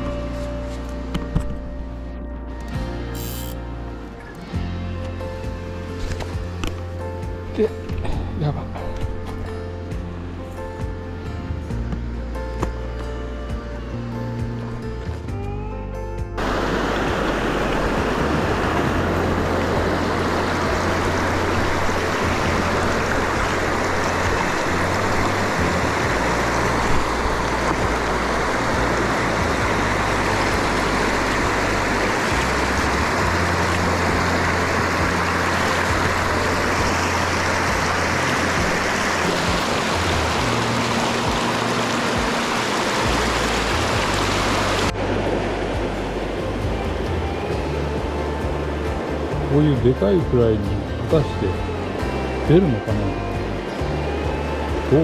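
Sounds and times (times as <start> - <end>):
stream rushing over rocks: 16.4 - 55.0.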